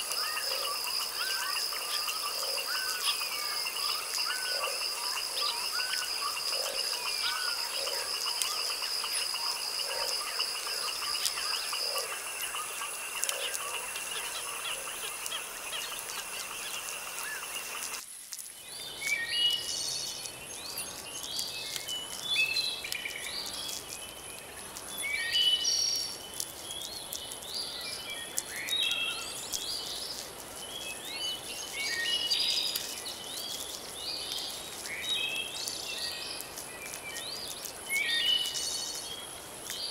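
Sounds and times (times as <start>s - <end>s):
birds singing: 0.0s - 18.0s, 18.6s - 39.9s
frog calls: 0.0s - 18.0s
background hiss: 0.0s - 39.9s
insects trilling: 0.0s - 39.9s.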